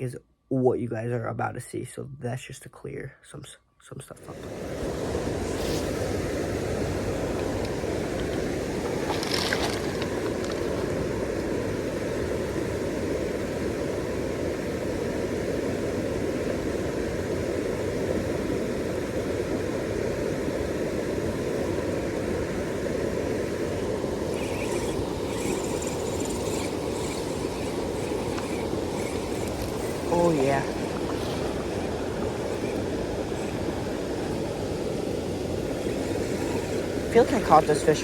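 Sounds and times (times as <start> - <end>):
creek water flowing over rocks: 4.3 - 12.4, 23.0 - 38.0.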